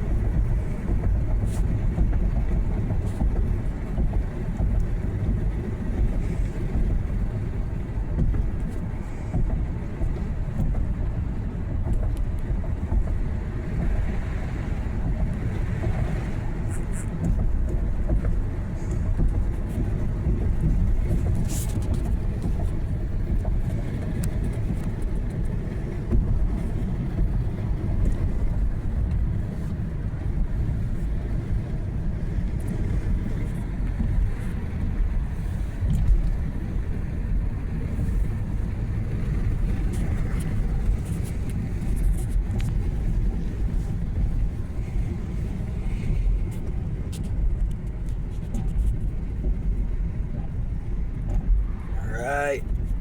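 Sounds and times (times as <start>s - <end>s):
car engine and tyres rumbling: 0.0s - 53.0s.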